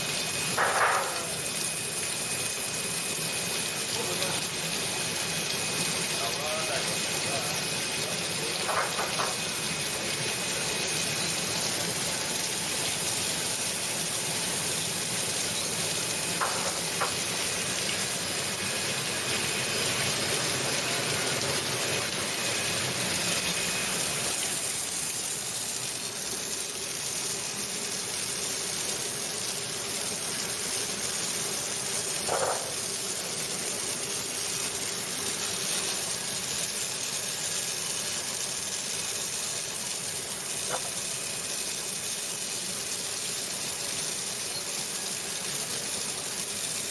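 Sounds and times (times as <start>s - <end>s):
churning spraying water: 0.0s - 46.9s
washing machine running: 0.0s - 46.9s.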